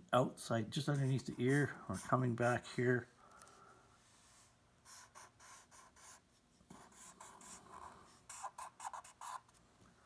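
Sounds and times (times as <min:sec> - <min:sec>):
pencil strokes on paper: 0:00.7 - 0:03.0, 0:04.0 - 0:09.6.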